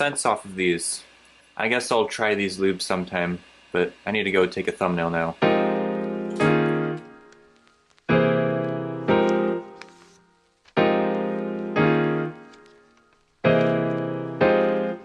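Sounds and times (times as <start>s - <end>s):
ringing chords in pairs: 5.4s - 7.3s.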